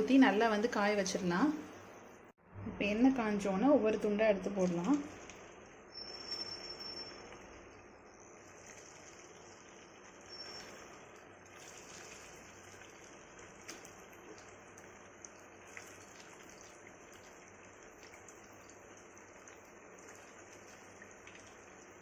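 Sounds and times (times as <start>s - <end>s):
chicken sizzling in hot oil: 4.8s - 22.0s
oil popping: 8.4s - 22.0s.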